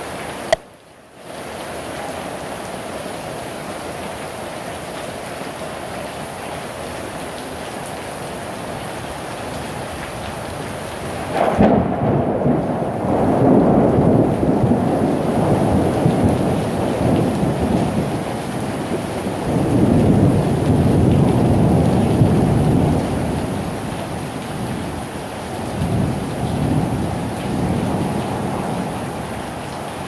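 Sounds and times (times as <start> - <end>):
heavy rain: 0.0 - 30.0
thunder rumbling: 11.1 - 29.6.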